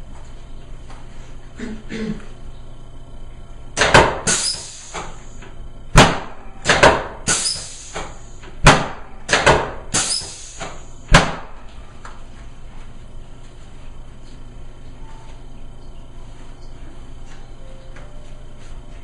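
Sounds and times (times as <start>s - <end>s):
short hiss of air: 4.3s - 5.2s, 7.3s - 8.2s, 10.0s - 10.8s.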